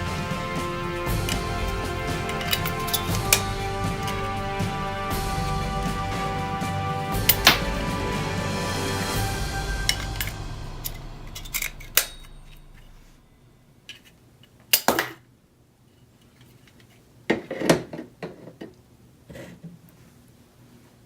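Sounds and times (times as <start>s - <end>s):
hard objects clattering: 0.0s - 4.4s
music: 0.0s - 13.6s.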